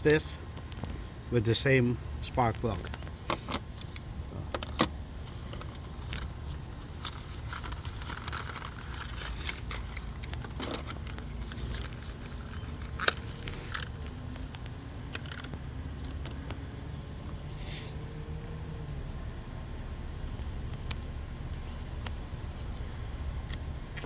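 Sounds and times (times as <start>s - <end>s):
low background rumble: 0.0s - 24.0s
hand tools clicking and scraping: 2.6s - 15.5s.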